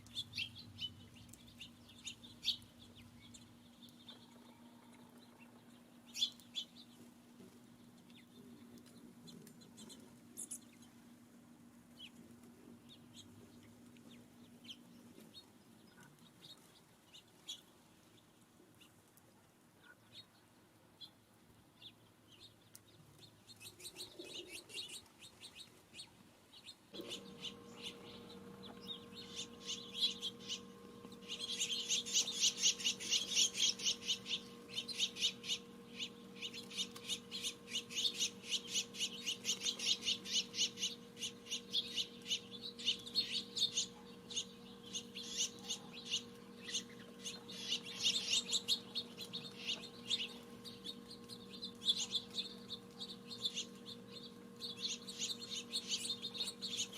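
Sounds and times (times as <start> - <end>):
songbirds chirping: 0.0 - 56.9
steady low hum: 26.6 - 56.9.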